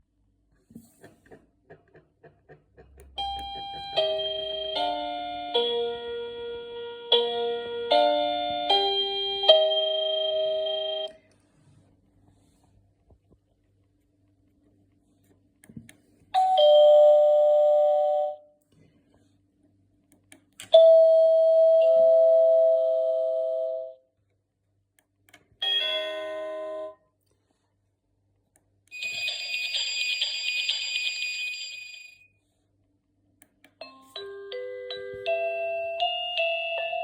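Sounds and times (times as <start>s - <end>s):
doorbell chimes: 3.2s - 6.1s, 7.1s - 11.1s, 16.4s - 18.4s, 25.6s - 27.0s, 33.8s - 37.0s.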